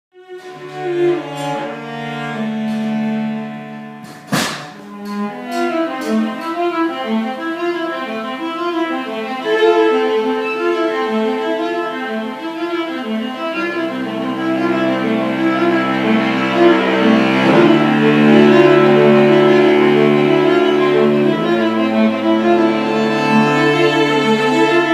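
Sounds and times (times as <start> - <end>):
cello and violin playing: 0.1 - 24.9
sharp knock: 4.0 - 6.2.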